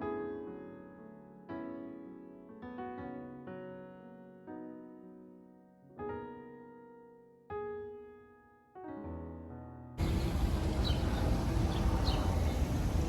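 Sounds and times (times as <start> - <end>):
soft solo piano: 0.0 - 13.0
loud steady outdoor roar: 10.0 - 13.0.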